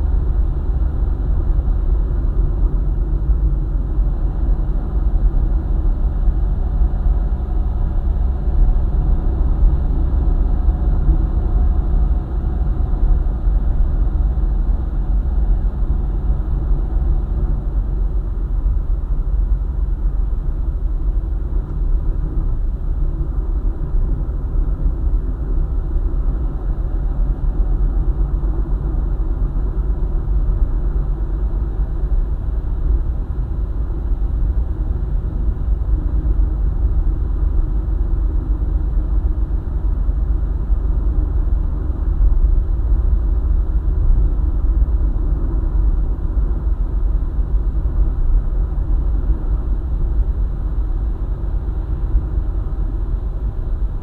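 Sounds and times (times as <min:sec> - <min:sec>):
faint steady hum: 0:00.0 - 0:54.0
vehicle driving on highway: 0:00.0 - 0:54.0.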